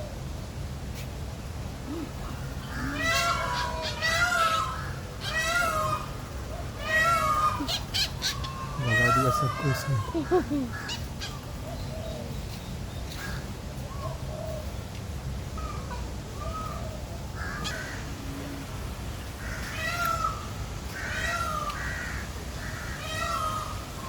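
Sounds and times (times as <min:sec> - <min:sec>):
animal mewing calls: 0:01.9 - 0:06.2, 0:06.8 - 0:11.4, 0:17.4 - 0:18.8.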